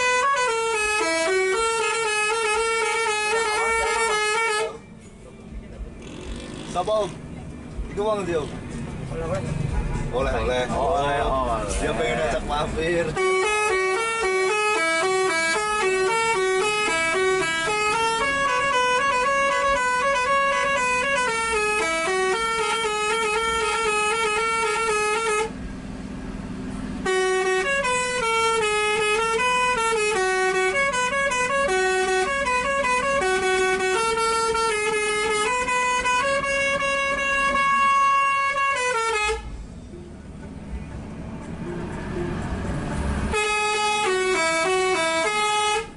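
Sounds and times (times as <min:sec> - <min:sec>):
musical bus horn melody: 0:00.0 - 0:04.8, 0:11.7 - 0:25.7, 0:26.8 - 0:39.9, 0:41.4 - 0:45.9.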